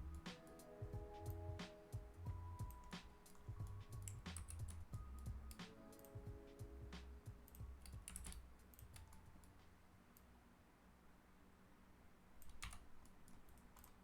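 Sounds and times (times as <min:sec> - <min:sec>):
computer keyboard clicks: 0:02.6 - 0:06.2, 0:07.4 - 0:09.6, 0:12.4 - 0:14.0.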